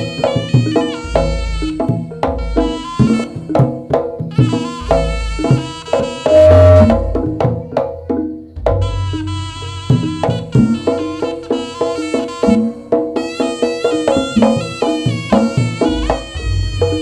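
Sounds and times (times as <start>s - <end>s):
drums and percussion music: 0.0s - 17.0s.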